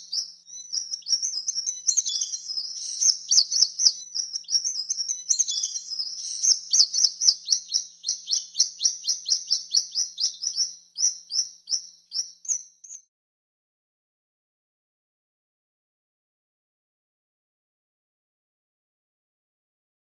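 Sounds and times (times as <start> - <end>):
swallow twittering: 0.0 - 13.0.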